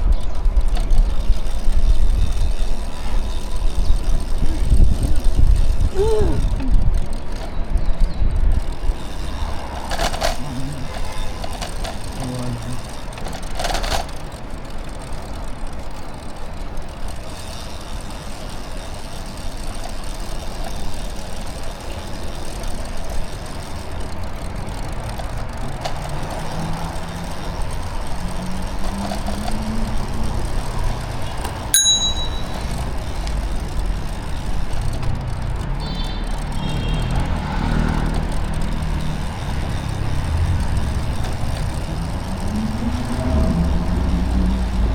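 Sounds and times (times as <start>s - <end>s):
city street traffic rumble: 0.0s - 44.9s
bicycle bell ding: 31.7s - 33.0s.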